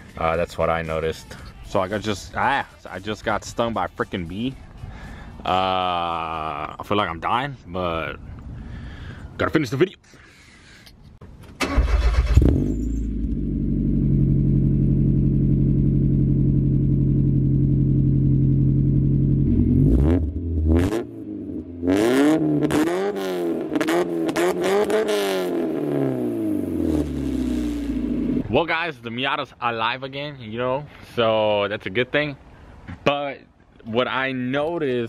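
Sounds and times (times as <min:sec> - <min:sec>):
car engine starting and idling: 0:11.2 - 0:21.7, 0:25.6 - 0:28.5
car engine revving: 0:11.6 - 0:28.5.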